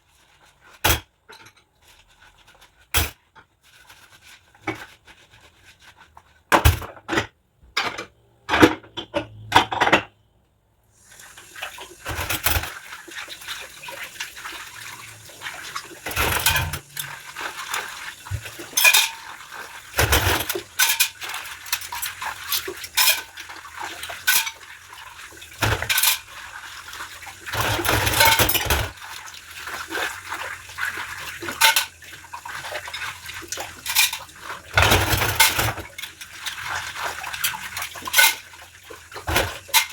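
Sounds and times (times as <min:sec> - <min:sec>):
dishes and cutlery clinking: 0:00.8 - 0:01.7, 0:16.1 - 0:17.1, 0:18.6 - 0:19.3, 0:20.0 - 0:23.3, 0:24.2 - 0:24.6, 0:31.5 - 0:32.0, 0:33.8 - 0:36.1, 0:37.4 - 0:38.4, 0:39.3 - 0:39.9
running water hiss: 0:11.0 - 0:20.1
water splashing: 0:11.1 - 0:39.9.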